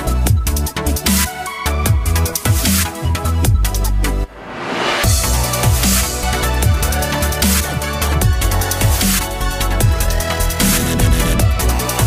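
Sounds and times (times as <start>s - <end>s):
electronic dance music: 5.0s - 12.0s
sliding bass drops: 9.3s - 12.0s.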